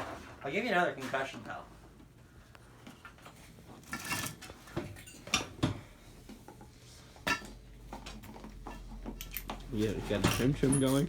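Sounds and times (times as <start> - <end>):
metal tools clinking: 8.7 - 11.0.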